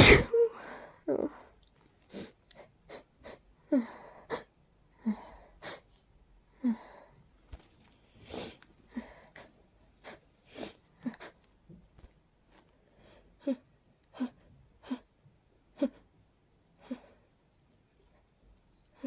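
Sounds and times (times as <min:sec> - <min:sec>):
person sneezing: 0:00.0 - 0:00.8.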